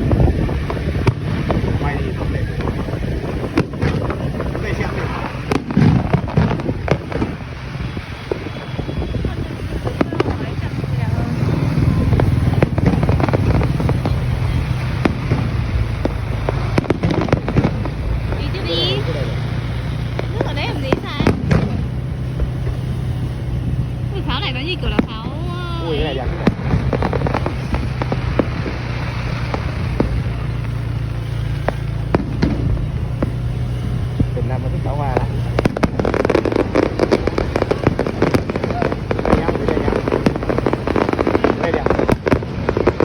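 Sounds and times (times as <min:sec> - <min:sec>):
fireworks popping and banging: 0:00.0 - 0:43.0
low rumble: 0:00.0 - 0:43.0.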